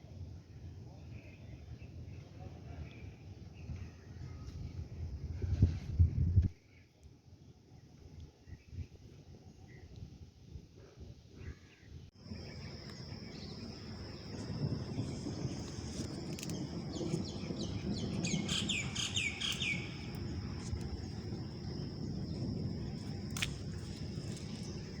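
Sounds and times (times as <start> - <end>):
birds chirping: 12.2 - 25.0
high-pitched insect-like hum: 12.2 - 25.0
low rushing background noise: 12.2 - 25.0.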